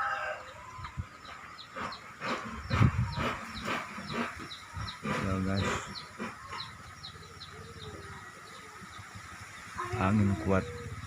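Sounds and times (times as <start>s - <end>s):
rooster crowing: 0.0s - 0.7s
bird chirping: 0.1s - 11.0s
wind rumbling on microphone: 0.6s - 6.2s.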